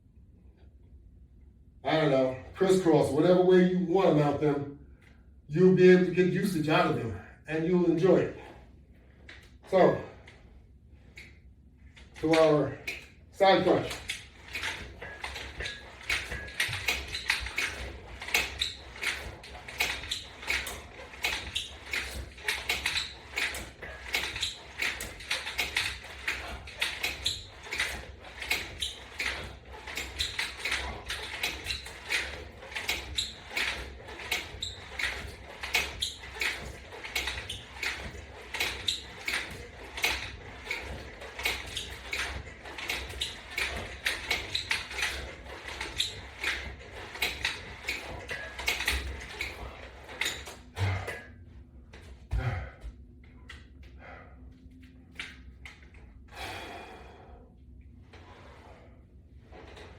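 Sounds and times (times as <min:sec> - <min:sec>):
steady low hum: 0:00.0 - 0:59.9
resistance band clicks and squeaks: 0:11.1 - 0:52.1.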